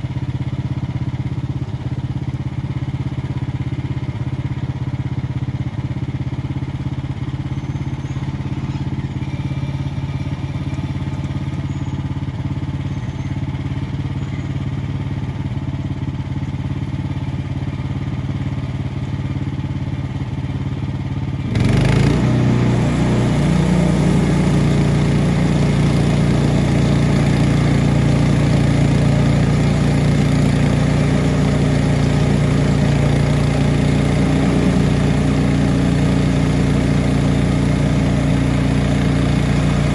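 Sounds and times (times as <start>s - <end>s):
small gas engine running: 0.0s - 39.9s.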